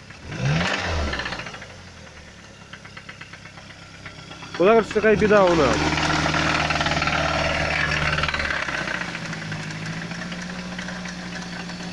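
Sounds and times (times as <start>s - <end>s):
car engine running: 0.0s - 11.9s
rapid rhythmic engine knocking: 0.0s - 11.9s.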